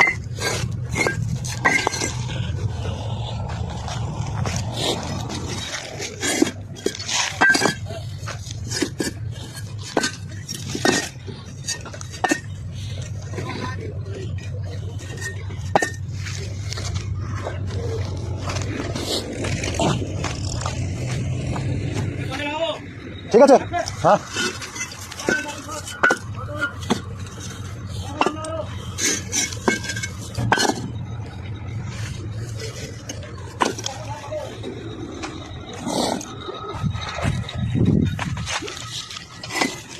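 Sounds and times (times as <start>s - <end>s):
bricks clinking together: 0.0s - 2.5s, 5.4s - 17.8s, 23.8s - 31.0s, 32.5s - 36.3s, 38.0s - 39.9s
steady low hum: 0.0s - 39.9s.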